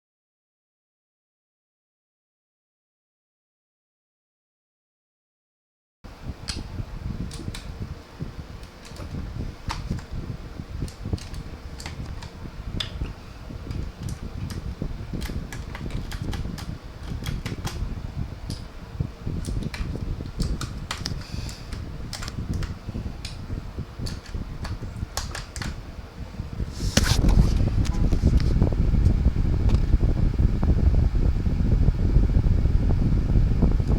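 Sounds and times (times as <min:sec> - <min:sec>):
steady low rumble: 0:06.1 - 0:33.9
mechanical keyboard clicks: 0:10.8 - 0:12.2, 0:15.2 - 0:17.8, 0:19.4 - 0:23.4.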